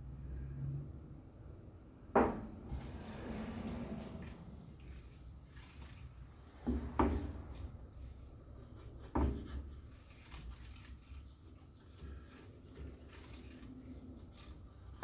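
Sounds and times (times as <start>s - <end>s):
dull knocks on workbench: 2.2s - 2.6s.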